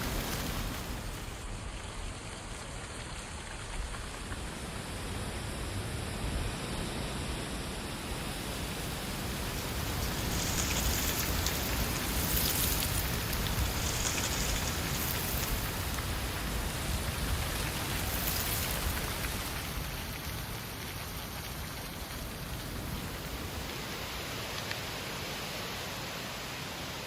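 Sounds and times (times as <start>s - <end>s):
gusty wind buffeting microphone: 4.0s - 24.2s.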